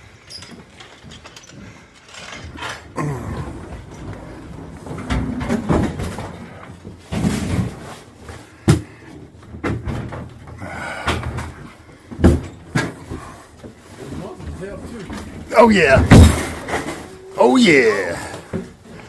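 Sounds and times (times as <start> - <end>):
rustling and shuffling: 0.1 - 10.5.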